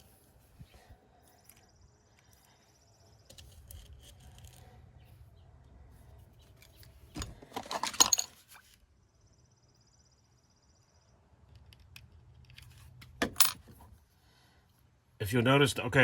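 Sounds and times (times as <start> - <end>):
small metal clicks and rattles: 3.3 - 4.8.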